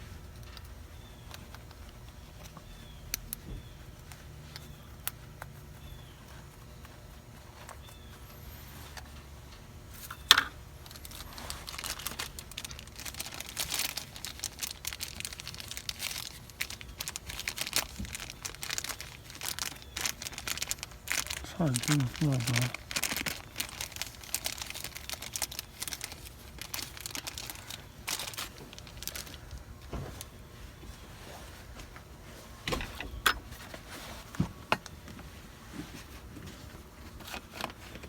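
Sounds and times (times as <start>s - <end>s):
plastic packaging crinkling: 10.8s - 31.8s, 37.0s - 38.0s.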